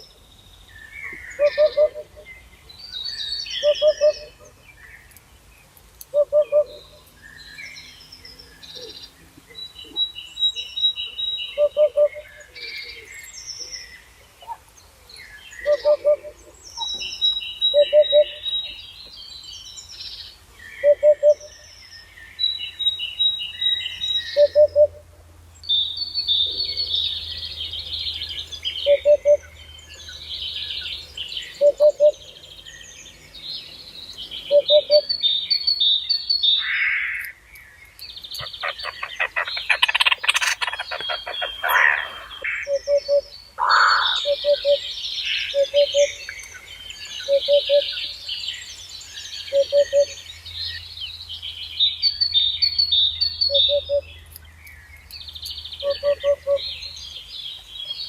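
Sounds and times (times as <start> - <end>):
birds twittering and chirping: 0.0 - 58.0
fast rattling bird trill: 38.4 - 42.4.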